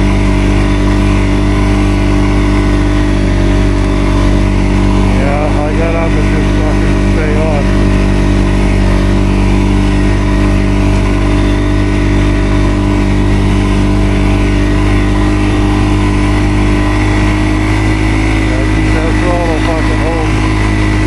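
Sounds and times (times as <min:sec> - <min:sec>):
atv engine running: 0:00.0 - 0:21.0.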